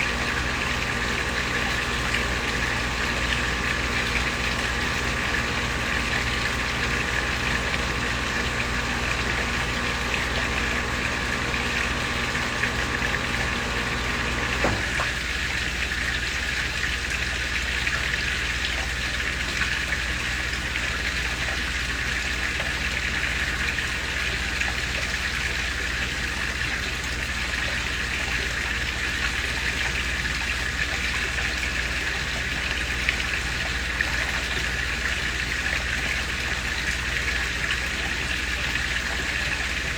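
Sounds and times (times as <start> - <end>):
low mechanical hum: 0.0 - 17.3, 28.9 - 39.9
waterfall splashing into pond: 0.0 - 39.9.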